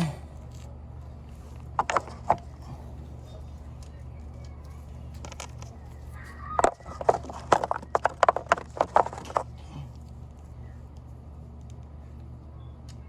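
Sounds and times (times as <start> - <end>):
steady low hum: 0.0 - 13.0
hand tools clacking and clinking: 1.3 - 10.0.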